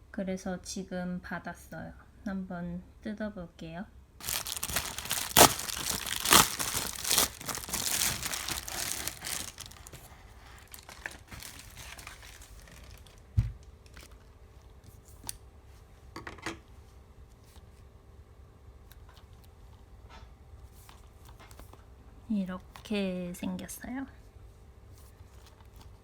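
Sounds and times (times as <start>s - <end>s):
package wrapping tearing: 4.2s - 14.2s
rustling and handling: 4.2s - 15.9s, 24.9s - 26.0s.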